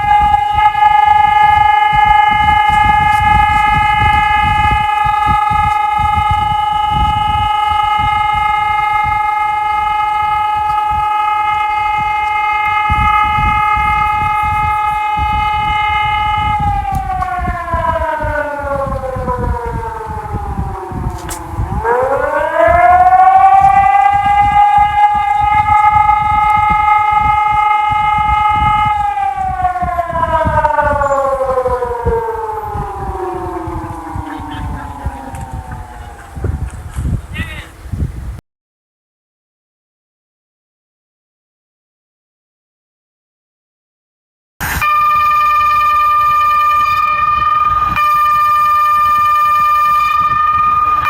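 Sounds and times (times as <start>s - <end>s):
electronic siren steady tone: 0.0s - 37.5s, 44.6s - 51.0s
wind buffeting microphone: 0.0s - 38.4s, 44.6s - 51.0s.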